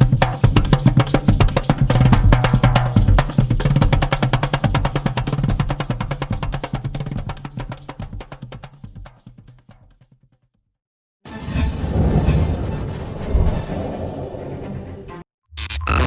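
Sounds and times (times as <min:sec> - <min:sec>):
fast rhythmic drumming music: 0:00.0 - 0:10.3.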